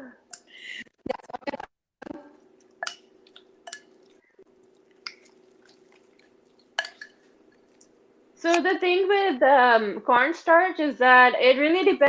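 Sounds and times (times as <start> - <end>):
faint steady hum: 0.0 - 12.0
wet squishing of chicken mixing: 2.4 - 8.1.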